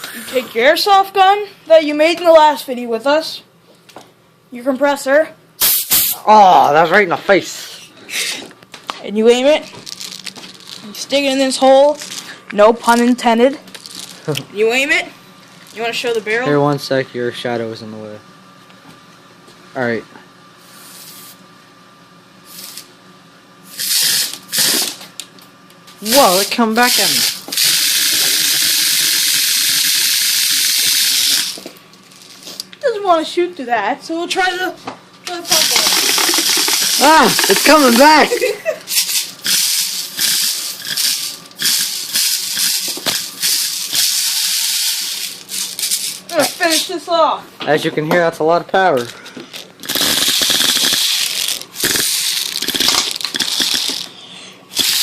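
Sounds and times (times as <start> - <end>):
compressed air blasts hissing: 27.0 - 31.5, 35.5 - 38.0, 38.9 - 46.1, 49.8 - 55.0.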